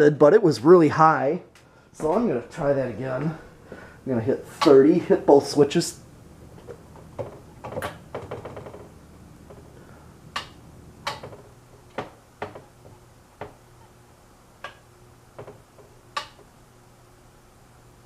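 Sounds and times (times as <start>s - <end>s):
ceiling fan motor hum: 0.0s - 18.0s
sharp switch clicks: 10.3s - 11.2s, 16.2s - 16.4s.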